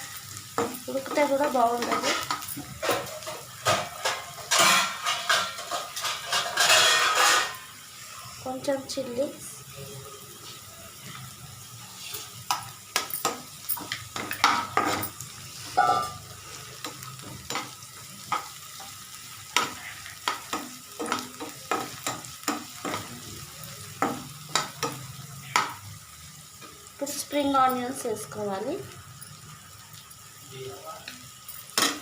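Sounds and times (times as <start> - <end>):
vegetables sizzling in oil: 0.0 - 32.0
spatula scraping pan: 0.6 - 7.7.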